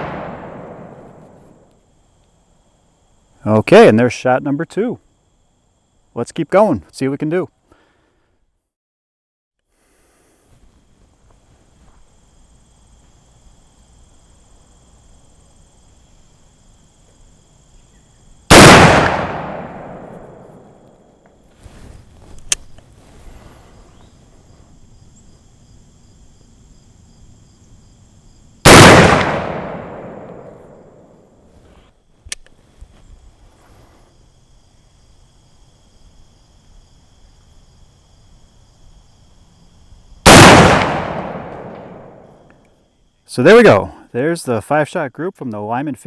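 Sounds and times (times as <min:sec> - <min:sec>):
pistol shots: 0:00.0 - 0:01.4, 0:18.5 - 0:20.7, 0:28.6 - 0:30.8, 0:40.2 - 0:42.3
faint sharp clicks: 0:32.3 - 0:32.6.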